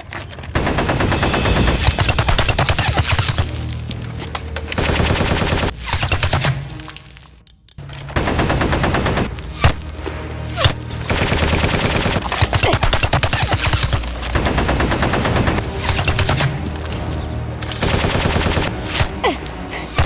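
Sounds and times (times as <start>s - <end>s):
background music: 0.0s - 20.0s
rapid machine-gun fire effects: 0.6s - 3.4s, 4.8s - 6.2s, 8.2s - 9.3s, 11.1s - 16.4s, 17.8s - 18.8s.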